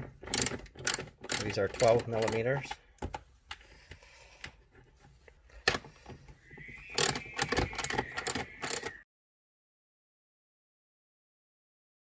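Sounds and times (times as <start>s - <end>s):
socket ratchet clicking: 0.3s - 2.5s, 7.0s - 9.0s
metallic clicks: 0.3s - 2.8s, 6.9s - 9.0s.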